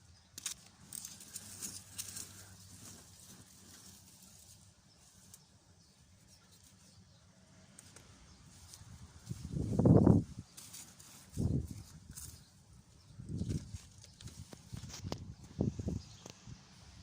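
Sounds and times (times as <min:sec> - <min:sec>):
faint rustles and clicks: 0:00.3 - 0:07.1, 0:07.7 - 0:16.5
wind gust buffeting microphone: 0:09.1 - 0:10.5, 0:14.6 - 0:16.7.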